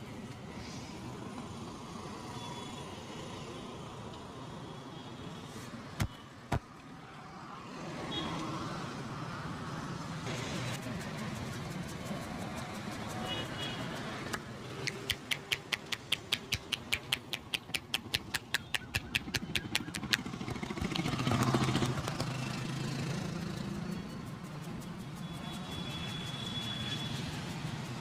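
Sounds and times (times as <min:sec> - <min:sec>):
street traffic: 0:00.0 - 0:28.0
vehicle passing: 0:06.5 - 0:28.0.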